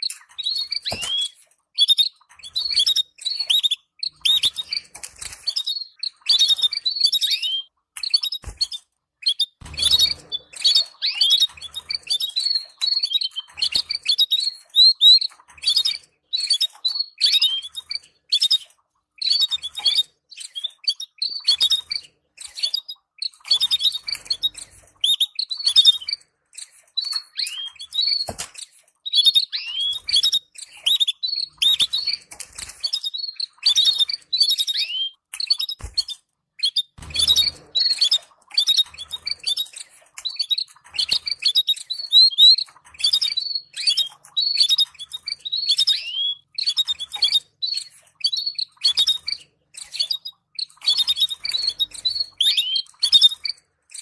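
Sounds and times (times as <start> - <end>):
canaries chirping: 0.0 - 54.0.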